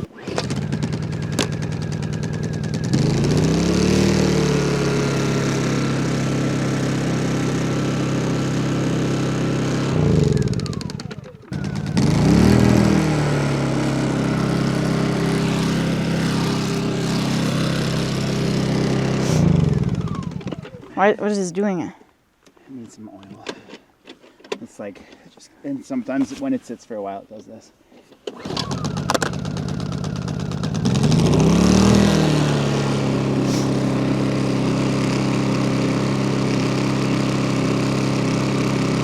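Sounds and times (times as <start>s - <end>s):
electric motor straining: 0.0s - 21.0s, 28.4s - 37.5s
generator engine running: 0.0s - 21.0s, 28.4s - 39.0s.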